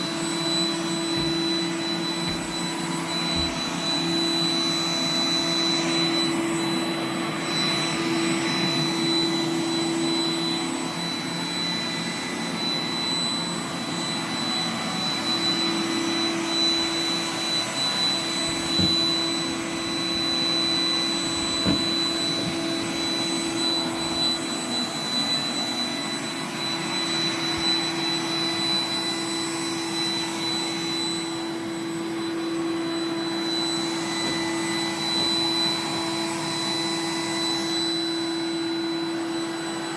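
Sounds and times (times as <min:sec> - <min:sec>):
robot vacuum motor humming: 0:00.0 - 0:09.8, 0:13.6 - 0:29.1.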